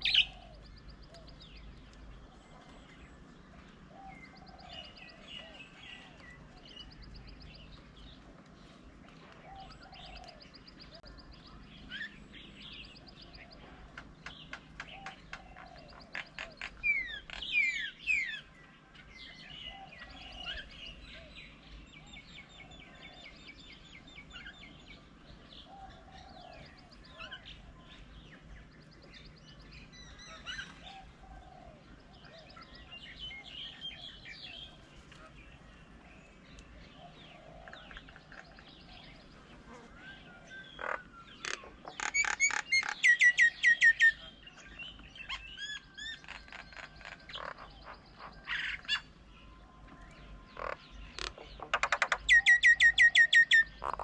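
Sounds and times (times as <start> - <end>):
lower bird call: 0.0 - 3.0
sharp down-slurred bird calls: 0.0 - 8.2, 9.4 - 23.6, 24.2 - 54.0
birds chirping and calling: 0.0 - 54.0.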